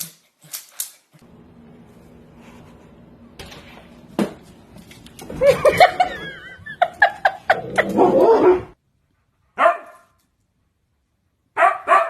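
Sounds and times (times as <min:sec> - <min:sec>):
dog barking: 0:09.6 - 0:10.2, 0:11.6 - 0:12.0.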